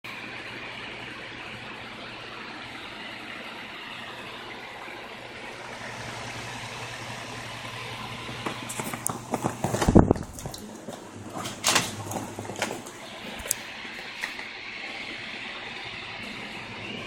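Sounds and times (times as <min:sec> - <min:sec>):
computer fans whirring: 0:00.1 - 0:17.0.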